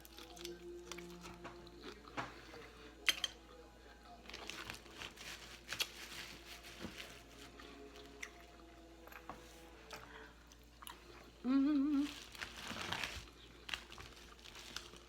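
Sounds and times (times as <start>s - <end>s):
soft chewing: 0.0s - 15.0s
person humming mmm: 11.1s - 12.4s.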